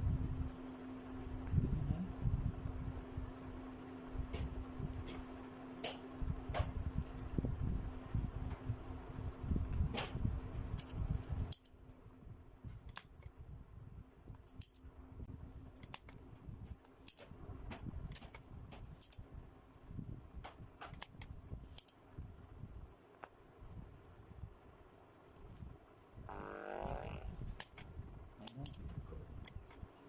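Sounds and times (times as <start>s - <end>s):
faint steady hum: 0.0s - 30.0s
hand tools clicking and snipping: 15.8s - 19.2s.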